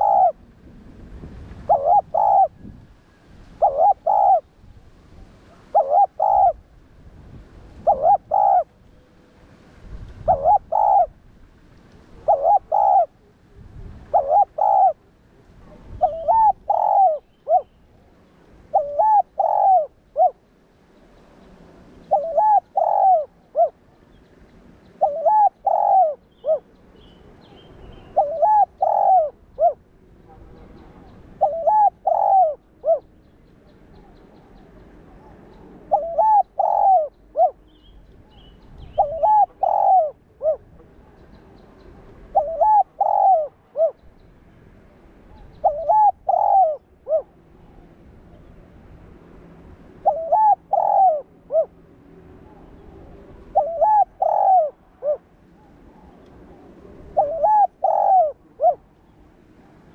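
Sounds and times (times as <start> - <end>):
dove cooing: 0.0 - 0.5, 1.6 - 2.7, 3.6 - 4.5, 5.3 - 6.6, 7.8 - 8.8, 10.2 - 11.2, 12.1 - 17.8, 18.7 - 20.4, 22.0 - 24.0, 25.0 - 29.8, 30.4 - 44.0, 45.3 - 48.0, 50.0 - 51.8, 52.4 - 59.0.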